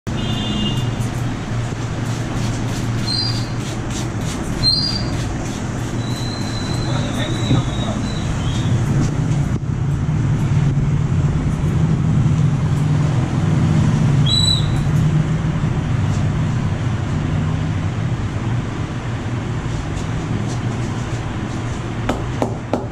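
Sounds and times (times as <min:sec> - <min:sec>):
road traffic rumble: 0:00.0 - 0:22.9
brief high squeal: 0:06.0 - 0:08.7.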